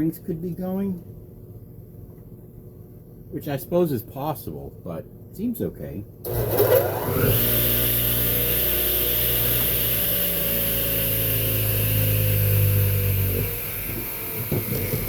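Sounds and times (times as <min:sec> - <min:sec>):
saw motor whining: 0:06.3 - 0:15.0.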